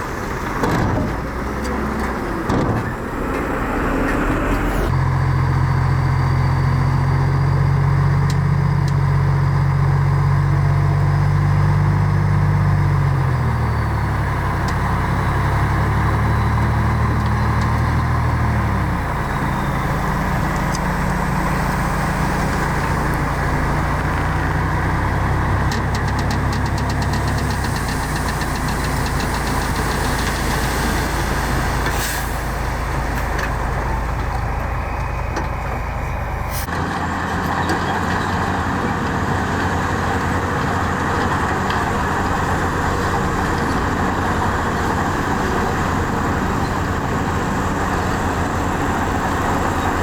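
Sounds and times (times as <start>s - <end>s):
heavy diesel machinery running: 0.0s - 50.0s.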